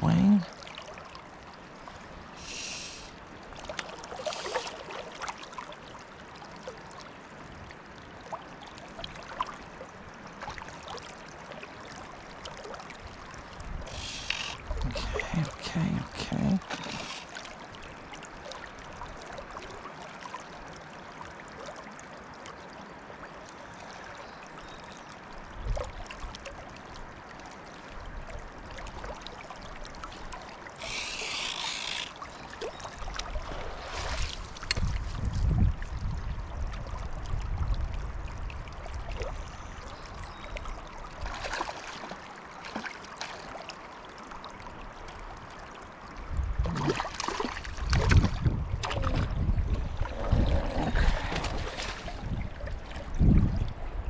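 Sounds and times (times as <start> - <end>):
river water rushing: 0.0 - 7.5, 8.1 - 22.3, 28.9 - 35.0, 41.0 - 46.1
brief hiss: 2.4 - 3.2, 4.2 - 4.8
wind buffeting the microphone: 34.1 - 39.6, 46.2 - 47.0, 47.6 - 54.0.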